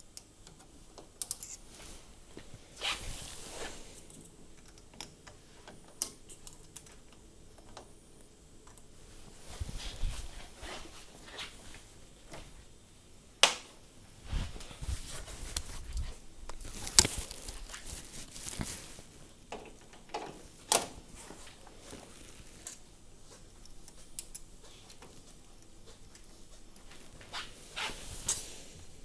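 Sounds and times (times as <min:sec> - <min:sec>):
metal parts clicking and knocking: 0:00.4 - 0:01.7.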